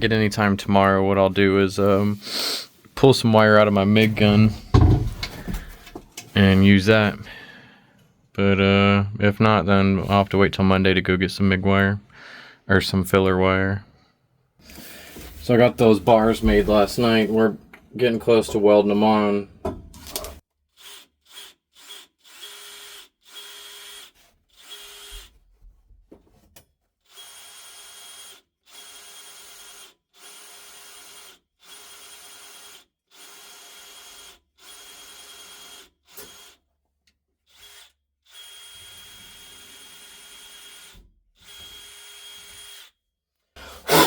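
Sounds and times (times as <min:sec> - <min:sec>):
power drill drilling metal tube: 0:20.1 - 0:25.3, 0:27.1 - 0:36.6, 0:37.5 - 0:43.0, 0:43.7 - 0:44.0.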